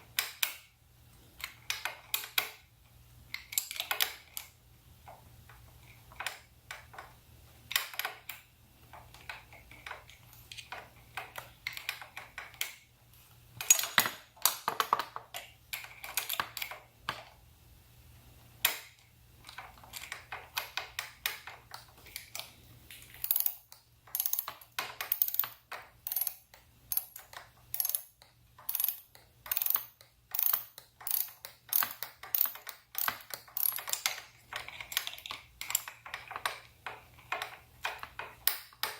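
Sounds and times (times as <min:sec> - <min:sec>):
ratchet clicking: 0:23.2 - 0:34.3.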